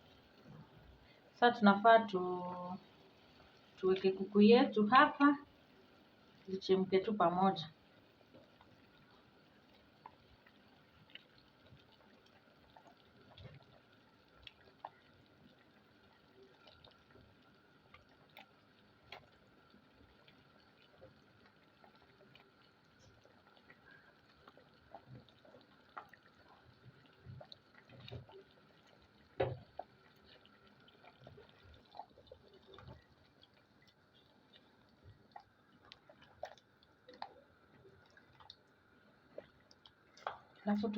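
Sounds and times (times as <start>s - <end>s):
curry bubbling in a pot: 0.0s - 40.9s.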